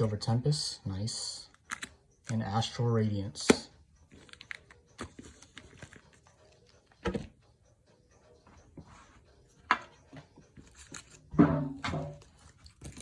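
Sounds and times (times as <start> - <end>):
card packs rustling and clicking: 1.6 - 2.5, 4.1 - 6.6, 12.1 - 13.0.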